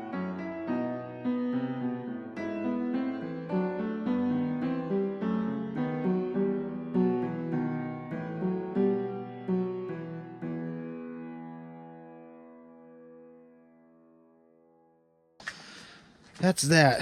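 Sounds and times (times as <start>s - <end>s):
piano music: 0.0s - 15.0s.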